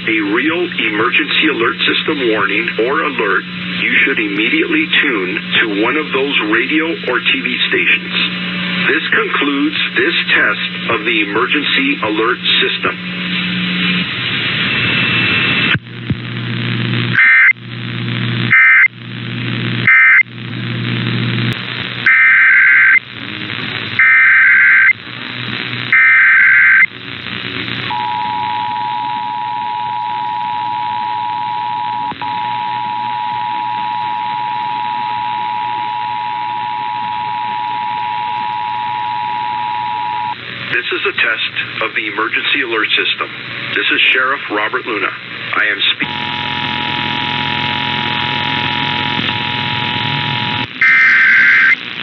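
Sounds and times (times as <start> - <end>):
radio hiss: 0.0 - 52.0
warbling data bursts: 45.6 - 51.8
two-tone attention signal: 46.0 - 51.8.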